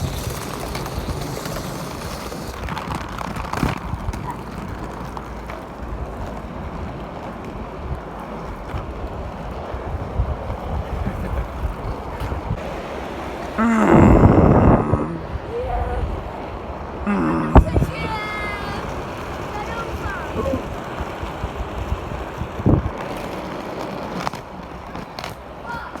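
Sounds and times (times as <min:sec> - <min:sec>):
wind buffeting microphone: 0:00.0 - 0:26.0
steady low rumble: 0:05.3 - 0:23.0
voice-like sound: 0:13.6 - 0:16.2.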